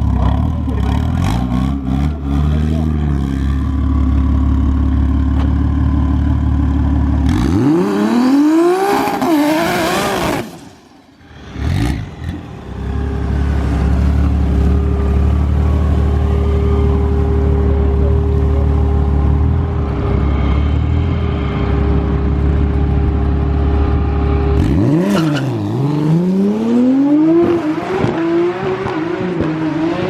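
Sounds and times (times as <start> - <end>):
drag car engine revving: 7.2 - 30.0.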